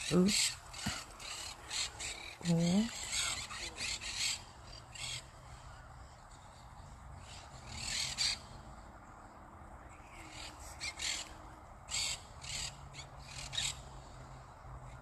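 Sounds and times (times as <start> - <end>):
bird calling high-pitched: 0.0 - 5.8.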